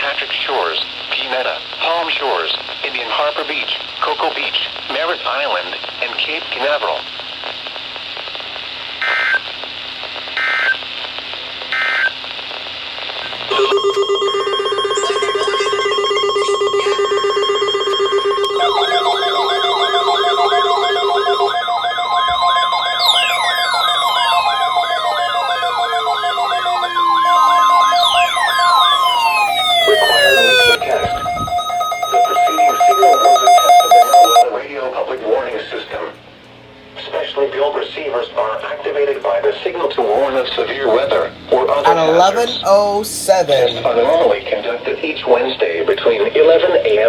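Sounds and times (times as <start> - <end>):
alarm tones: 13.5 - 34.5, 41.9 - 44.0
data bursts: 13.5 - 34.5
wailing electronic sirens: 13.5 - 34.5.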